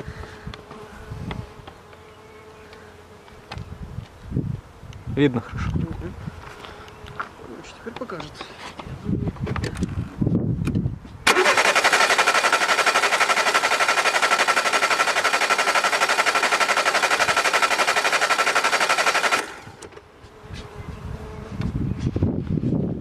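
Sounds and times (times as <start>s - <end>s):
car engine cranking on starter: 11.3s - 19.9s.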